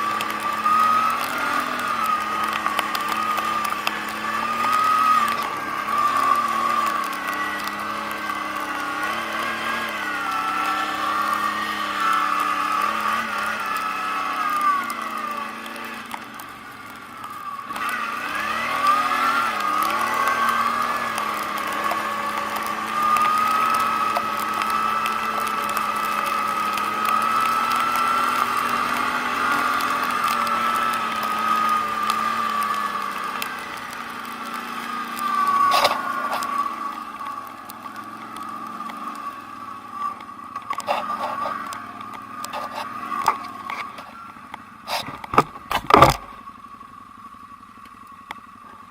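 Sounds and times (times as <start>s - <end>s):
atv engine running: 0.0s - 48.9s
knocks and clatter: 44.9s - 46.4s.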